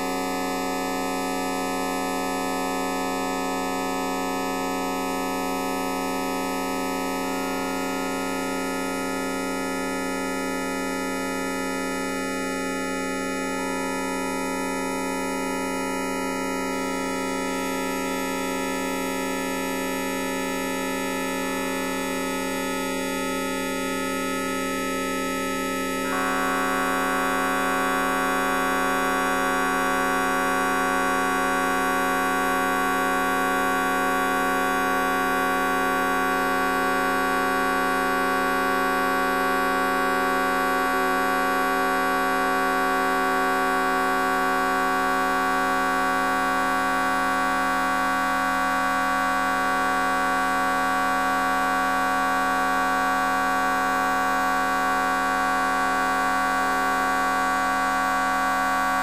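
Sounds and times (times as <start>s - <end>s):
steady buzzing drone: 23.7s - 59.0s.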